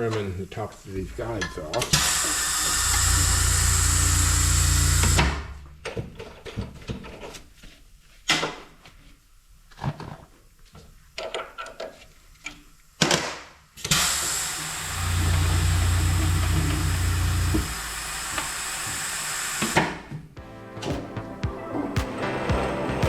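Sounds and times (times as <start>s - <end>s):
machine running: 1.0s - 6.3s, 13.9s - 19.6s.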